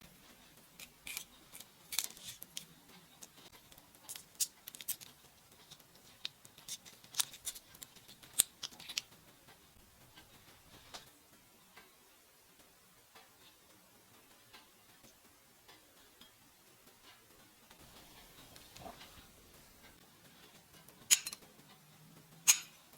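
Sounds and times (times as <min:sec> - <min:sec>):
scissors snipping shrimp: 0:00.8 - 0:09.1.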